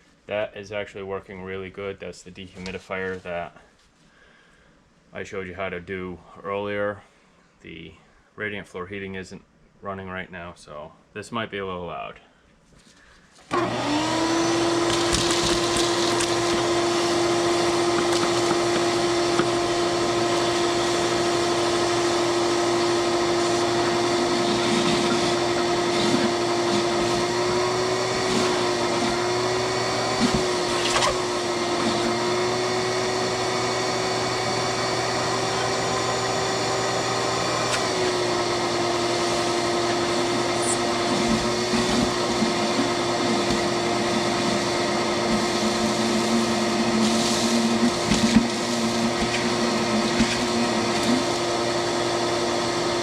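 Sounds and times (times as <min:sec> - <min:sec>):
vacuum cleaner running: 0:13.5 - 0:53.0.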